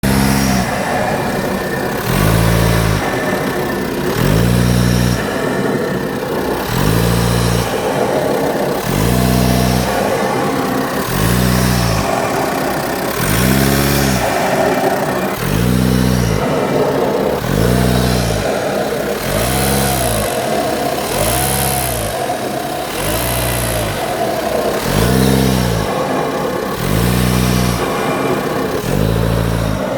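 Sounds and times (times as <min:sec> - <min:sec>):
diesel engine revving: 0:00.0 - 0:29.9.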